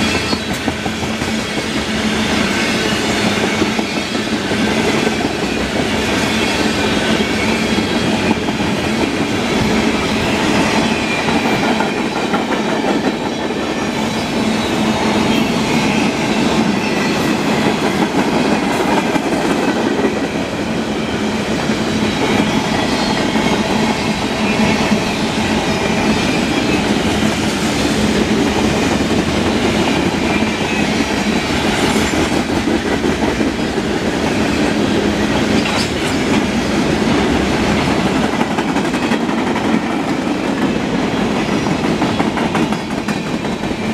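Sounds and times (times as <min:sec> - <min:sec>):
freight train rumbling: 0:00.0 - 0:43.9.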